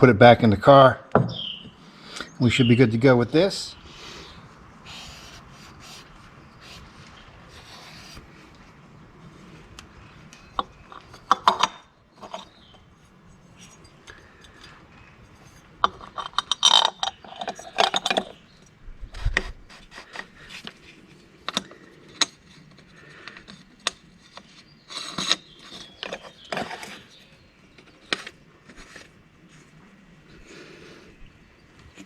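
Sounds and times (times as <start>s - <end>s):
metal clicks and knocks: 15.8s - 18.4s.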